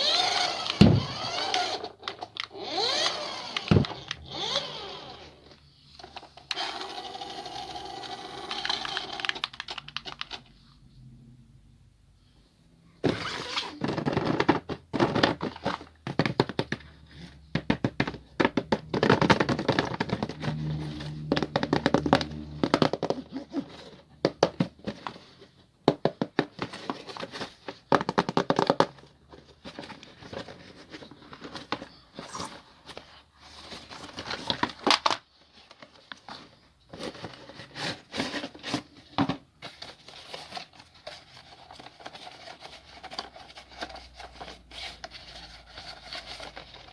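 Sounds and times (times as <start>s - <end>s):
plastic and cardboard crinkling: 8.5s - 10.7s, 13.0s - 46.9s.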